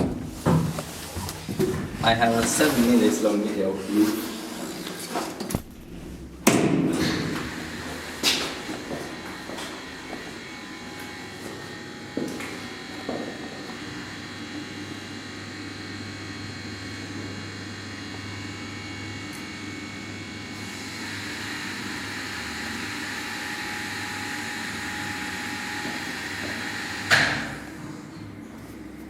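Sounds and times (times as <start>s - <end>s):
elevator machinery humming: 0.0s - 14.3s.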